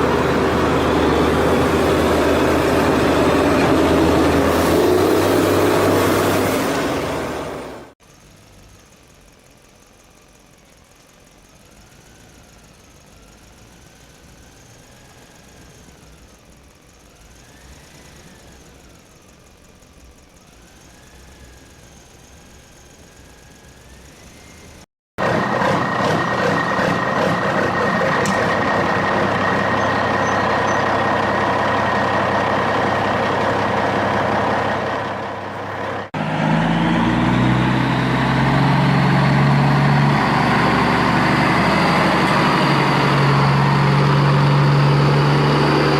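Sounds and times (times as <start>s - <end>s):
engine-like drone: 0.0s - 45.9s
rattling mechanical running noise: 7.0s - 36.3s.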